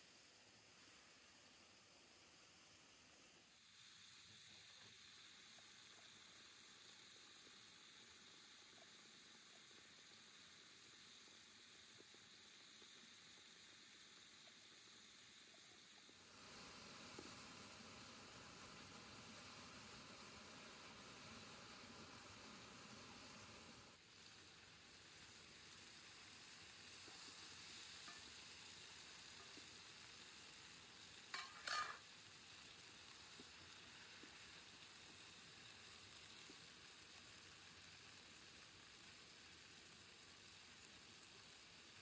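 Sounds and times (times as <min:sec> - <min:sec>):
food sizzling in a pot: 0:00.0 - 0:42.0
utensil scraping a pot: 0:31.3 - 0:32.0.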